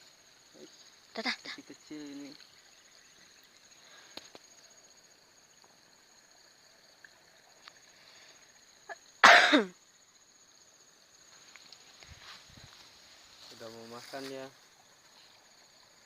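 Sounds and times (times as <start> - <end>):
high insect chorus: 0.0 - 16.0
person coughing: 9.2 - 9.7.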